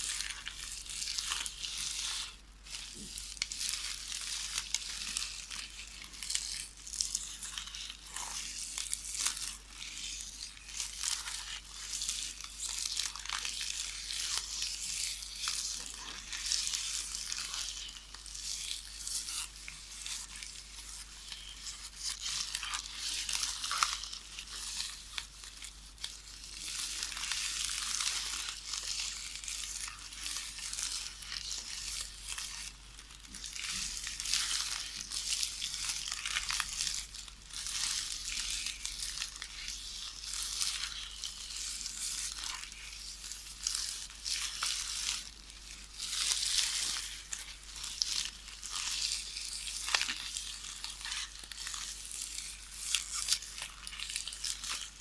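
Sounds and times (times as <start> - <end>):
videotape ribbon crinkling: 10.7 - 55.0.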